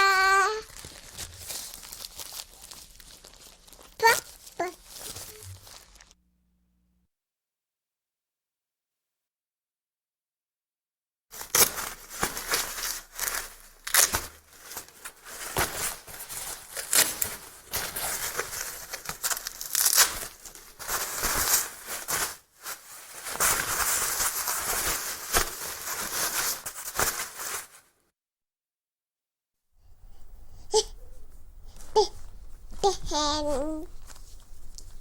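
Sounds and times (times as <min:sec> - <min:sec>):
diaper crinkling and rustling: 0:00.0 - 0:06.2, 0:11.3 - 0:27.9, 0:31.2 - 0:35.0
diaper tearing: 0:00.0 - 0:06.2, 0:11.4 - 0:22.3.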